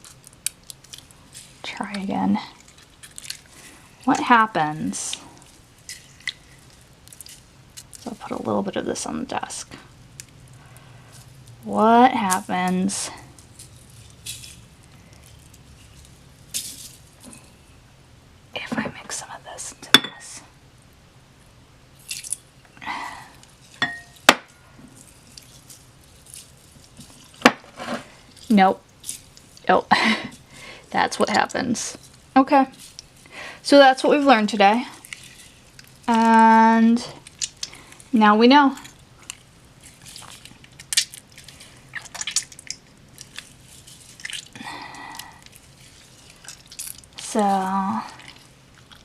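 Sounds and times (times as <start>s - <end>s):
slime squelching and crackling: 0.0s - 17.4s, 30.4s - 49.0s.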